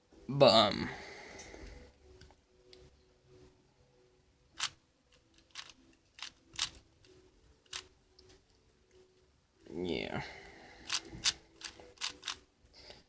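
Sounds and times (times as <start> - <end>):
puzzle cube layers clicking: 4.6 - 6.8, 7.6 - 7.9, 10.8 - 12.5.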